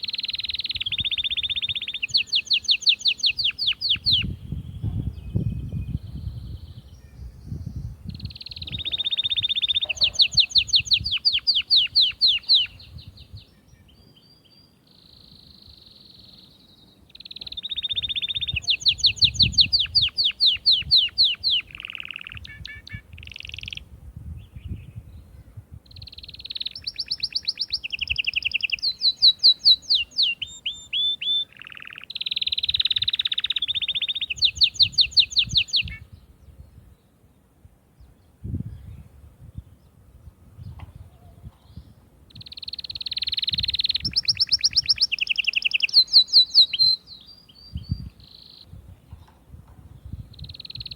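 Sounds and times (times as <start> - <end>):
canary singing rapid trills: 0.0 - 13.4, 17.1 - 23.8, 25.9 - 36.0, 42.3 - 48.8, 50.1 - 50.9.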